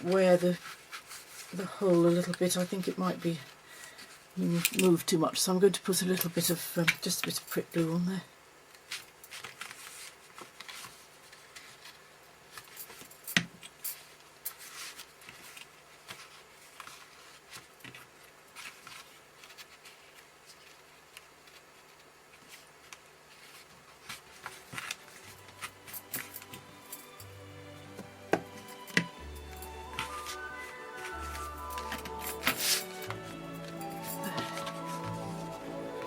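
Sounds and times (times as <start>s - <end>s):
faint steady hum: 0.0s - 36.0s
card and paper handling: 8.8s - 13.0s, 14.0s - 26.8s, 29.9s - 36.0s.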